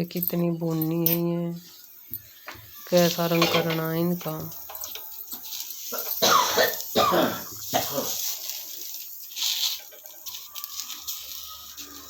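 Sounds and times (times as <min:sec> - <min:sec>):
person coughing: 0:05.9 - 0:08.3.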